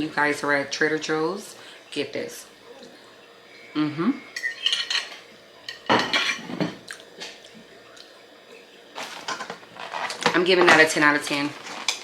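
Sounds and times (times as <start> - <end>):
person humming: 3.6 - 4.3
utensils clinking against a dish: 4.3 - 7.4, 9.0 - 12.0.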